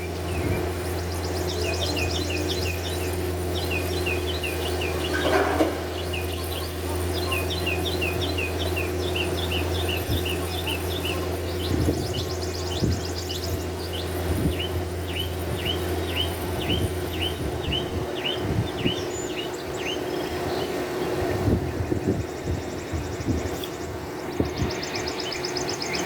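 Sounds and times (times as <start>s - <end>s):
songbird chirping: 0.0s - 21.2s, 21.9s - 26.0s
steady low drone: 0.0s - 26.0s.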